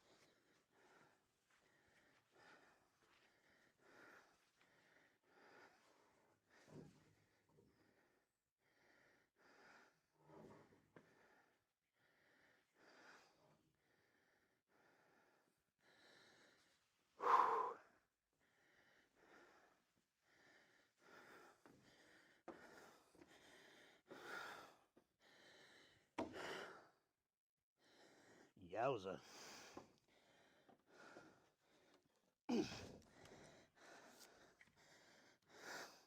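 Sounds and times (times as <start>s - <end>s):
man breathing hard: 11.0s - 27.0s, 27.8s - 28.6s, 29.2s - 36.0s.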